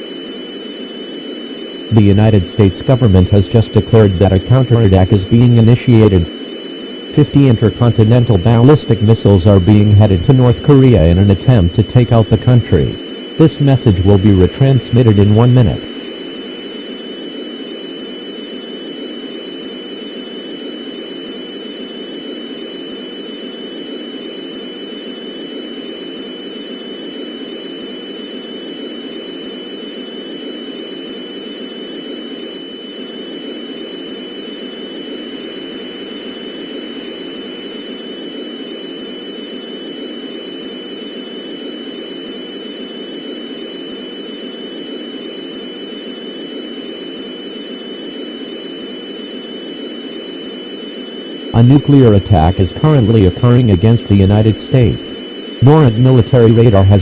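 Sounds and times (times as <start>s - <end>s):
static hiss: 0.0s - 18.4s
thin high steady whines: 0.0s - 57.0s.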